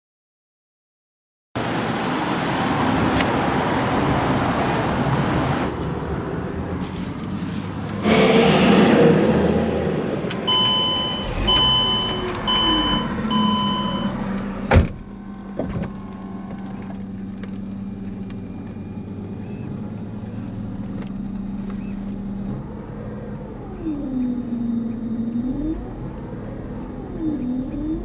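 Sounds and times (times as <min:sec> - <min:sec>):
car engine surging: 0:01.6 - 0:28.0
car steady low hum: 0:02.7 - 0:28.0
short electronic chimes: 0:10.5 - 0:14.2.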